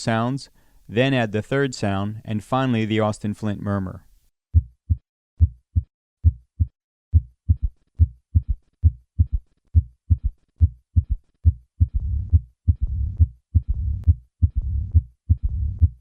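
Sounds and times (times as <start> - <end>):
galloping heartbeat: 4.6 - 16.0.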